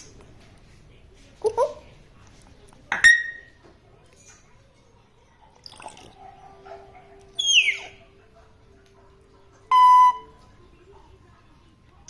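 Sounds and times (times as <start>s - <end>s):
parrot squawk: 7.4s - 8.0s.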